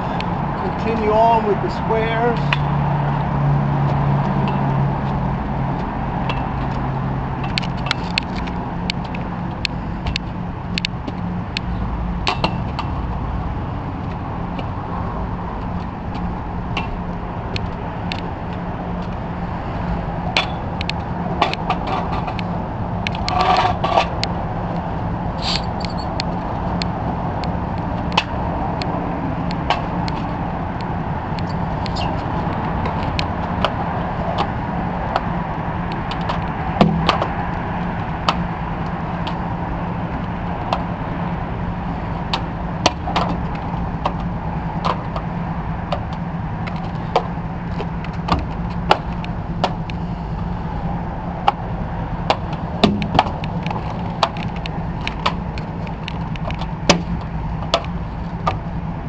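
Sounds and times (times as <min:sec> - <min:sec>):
sharp clicks and knocks: 0:05.8 - 0:13.0, 0:20.3 - 0:39.5, 0:42.1 - 0:50.4, 0:51.4 - 0:58.8.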